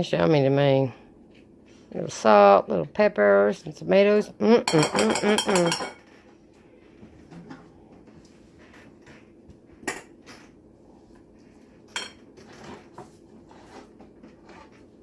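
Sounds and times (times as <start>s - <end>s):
dishes clinking on counter: 4.7s - 6.2s, 9.8s - 10.5s, 11.9s - 12.7s.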